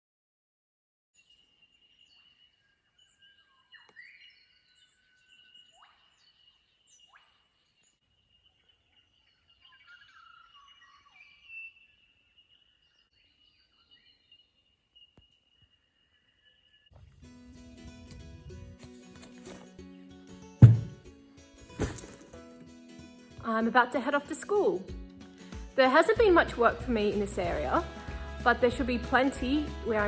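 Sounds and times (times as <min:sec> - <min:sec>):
birds chirping and whistling: 0:01.2 - 0:16.9.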